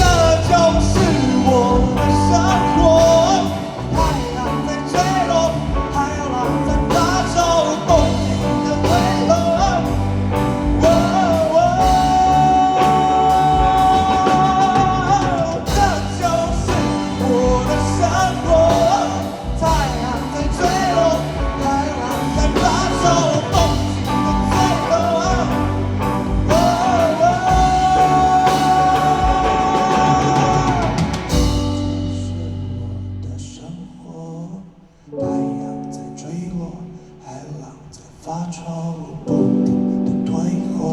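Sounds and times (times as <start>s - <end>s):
rock band playing: 0.0s - 33.2s
person singing: 0.0s - 40.9s.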